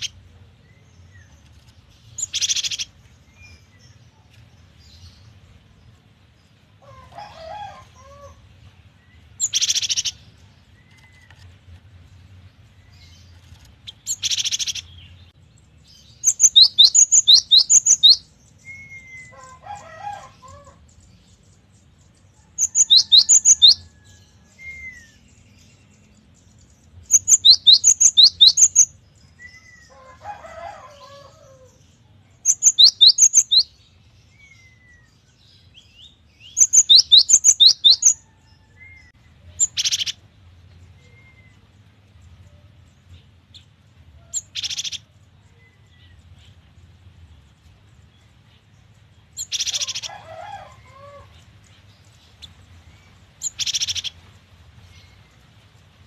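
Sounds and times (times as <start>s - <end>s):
bird whistled song: 16.2s - 19.3s, 22.6s - 25.2s, 27.1s - 29.9s, 32.5s - 33.7s, 36.5s - 38.2s.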